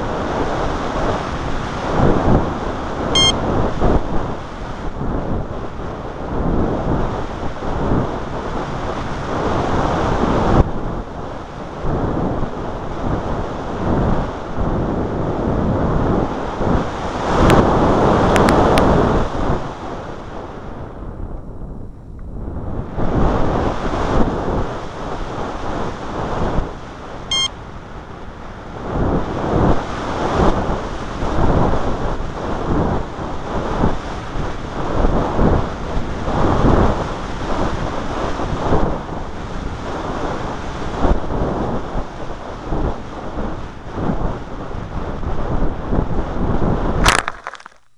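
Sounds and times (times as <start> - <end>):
wind buffeting microphone: 0.0 - 47.1
short electronic beep: 3.2 - 3.4, 27.3 - 27.6.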